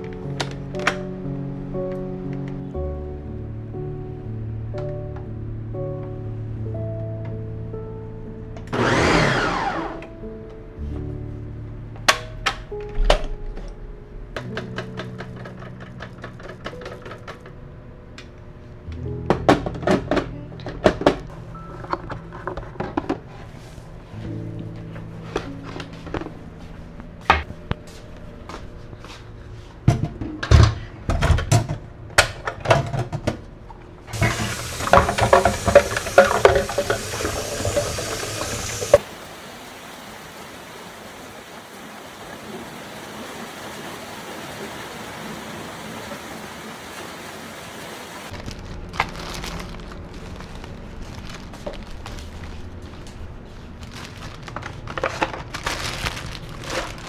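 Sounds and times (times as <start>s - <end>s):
knocks and clicks of handling: 14.4s - 17.6s
tap water running into sink: 34.1s - 39.0s.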